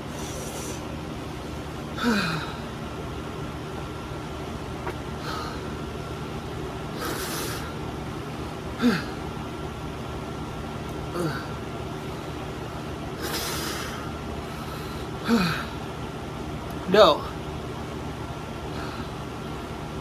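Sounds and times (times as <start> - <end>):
hissing breath: 0.0 - 0.9, 7.0 - 7.8, 13.2 - 15.5
man gasping and groaning: 2.0 - 2.7, 8.8 - 9.2, 11.1 - 11.6.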